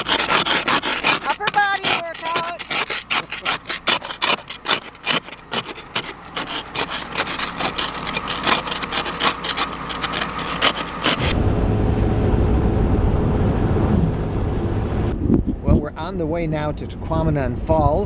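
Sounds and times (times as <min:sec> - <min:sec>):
ice scraper scraping glass: 0:00.0 - 0:11.4
low road and engine hum: 0:00.0 - 0:18.0.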